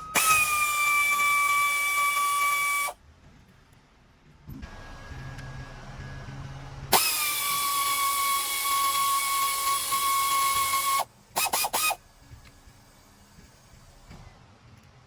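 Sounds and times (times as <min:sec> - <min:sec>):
power tool motor whine: 0:00.0 - 0:03.0, 0:06.9 - 0:12.0.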